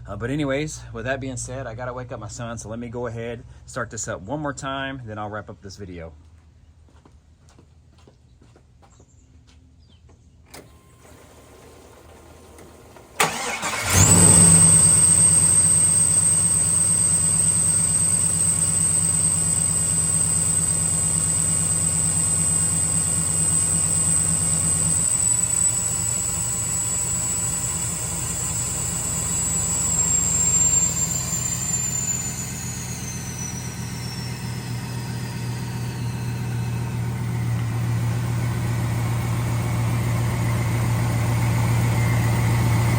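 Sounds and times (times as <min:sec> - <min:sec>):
car engine starting and idling: 0:10.5 - 0:42.9
high whine: 0:13.9 - 0:42.9.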